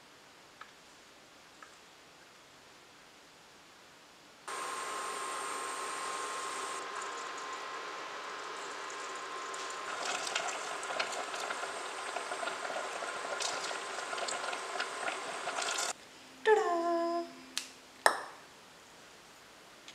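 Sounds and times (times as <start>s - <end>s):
frying in hot oil: 4.5s - 16.0s.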